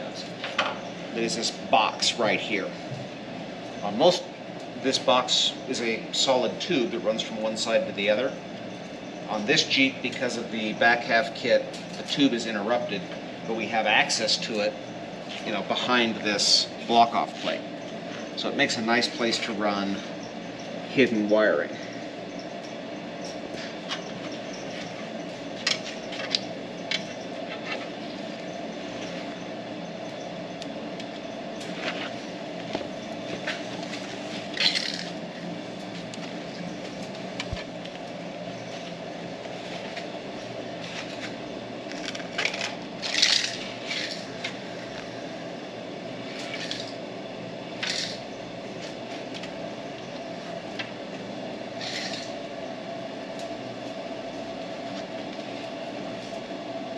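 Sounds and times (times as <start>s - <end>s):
steady mechanical hum: 0.0s - 56.9s
tools clicking and clattering: 34.5s - 35.2s, 41.9s - 44.3s, 47.8s - 48.2s, 51.8s - 52.4s.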